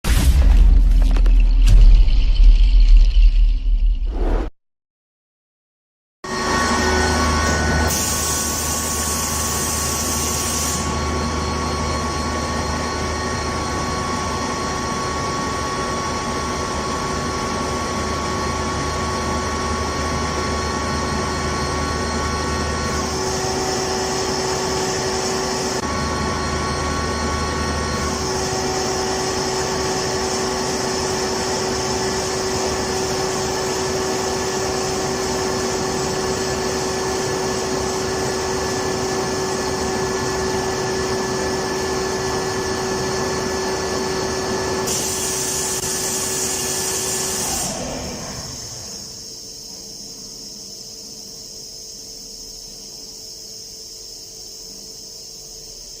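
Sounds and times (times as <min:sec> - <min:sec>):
air compressor running: 0:06.3 - 0:50.6.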